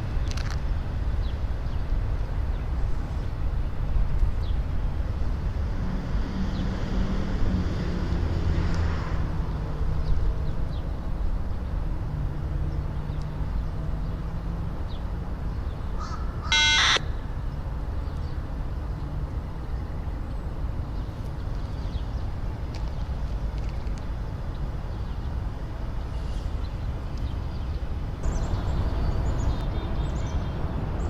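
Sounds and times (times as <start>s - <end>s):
crow cawing: 16.0s - 17.3s.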